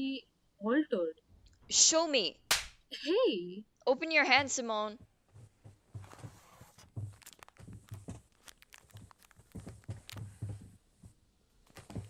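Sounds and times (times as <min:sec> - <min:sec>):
shuffling footsteps: 0:05.0 - 0:12.0
knocks and rustles on stage floor: 0:05.3 - 0:10.8.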